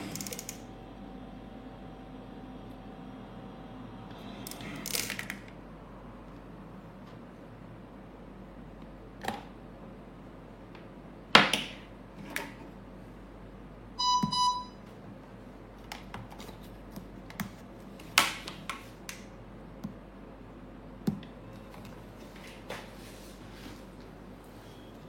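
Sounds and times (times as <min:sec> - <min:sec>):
electronic beeps: 0:14.0 - 0:14.8.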